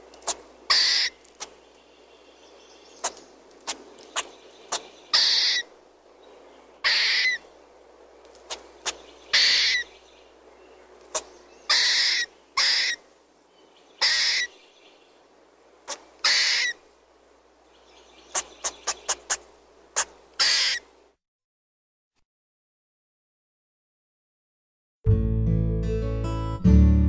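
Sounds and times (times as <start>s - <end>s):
squirrel chirping: 0.2s - 5.7s, 6.8s - 7.5s, 8.5s - 10.2s, 11.1s - 13.0s, 13.8s - 14.8s, 17.7s - 20.9s.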